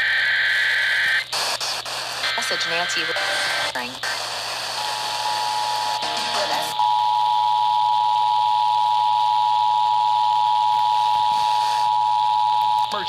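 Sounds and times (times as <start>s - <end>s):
broadcast hiss: 0.0s - 6.8s, 10.9s - 12.0s.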